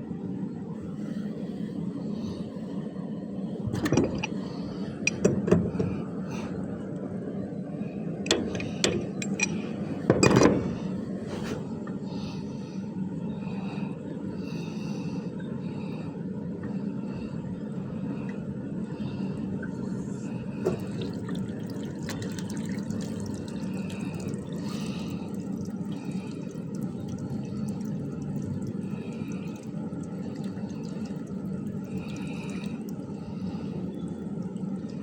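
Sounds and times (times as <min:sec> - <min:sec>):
water running from pipes: 0:20.6 - 0:35.0.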